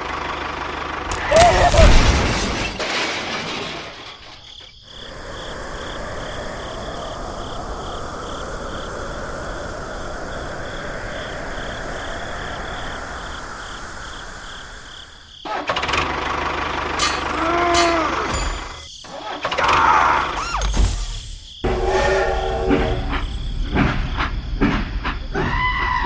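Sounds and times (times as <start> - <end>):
steady hiss: 4.9 - 15.4.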